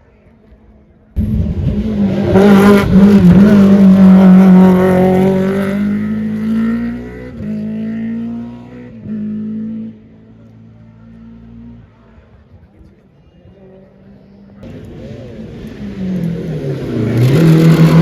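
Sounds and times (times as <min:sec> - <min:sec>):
rally car engine revving high: 0:01.2 - 0:11.9, 0:14.6 - 0:18.0.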